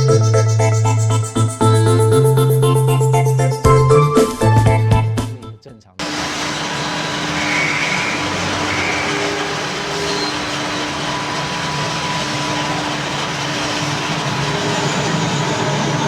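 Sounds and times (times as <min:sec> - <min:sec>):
constant hum: 0:06.0 - 0:16.0
mechanical rumble and hiss: 0:06.0 - 0:16.0.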